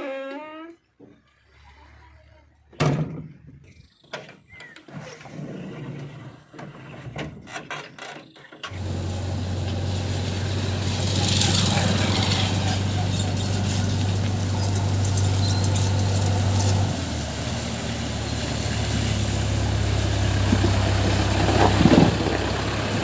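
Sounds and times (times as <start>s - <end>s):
diesel engine running: 8.7s - 23.0s.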